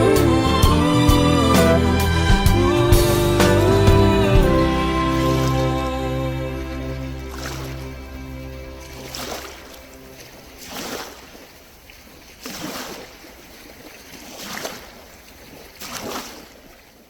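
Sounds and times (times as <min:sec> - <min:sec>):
held music chord: 0:00.0 - 0:10.6
sea waves washing in: 0:00.0 - 0:16.8.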